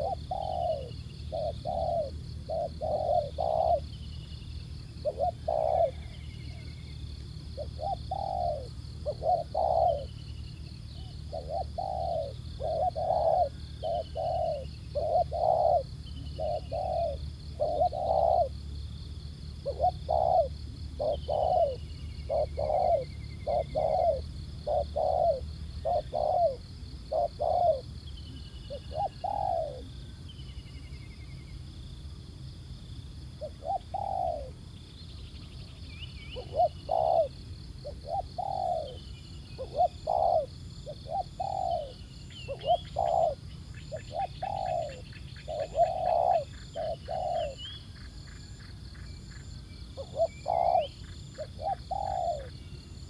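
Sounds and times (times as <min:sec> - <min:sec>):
doves cooing: 0:00.0 - 0:18.8, 0:19.6 - 0:30.0, 0:33.4 - 0:34.7, 0:36.4 - 0:53.0
small birds chirping faintly: 0:00.0 - 0:53.0
steady insect drone: 0:00.0 - 0:53.0.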